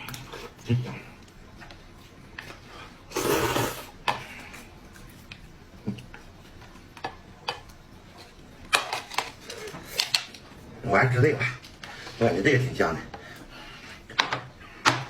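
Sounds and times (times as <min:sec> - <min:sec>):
person slurping noodles: 0:03.1 - 0:04.0.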